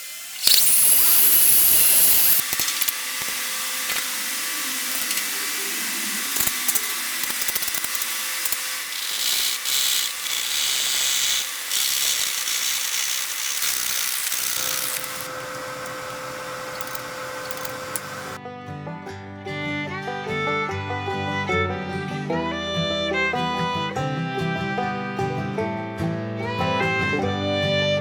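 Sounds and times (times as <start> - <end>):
power tool cutting wood: 0.0 - 18.4.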